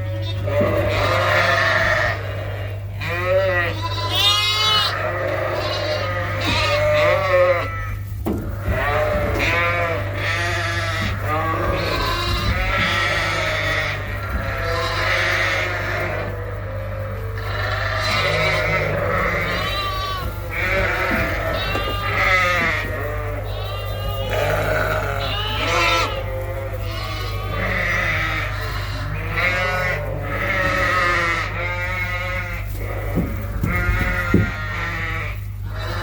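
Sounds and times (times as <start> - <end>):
sheep and lambs bleating: 0.0 - 36.0
steady low hum: 0.0 - 36.0
knocks: 33.1 - 34.6.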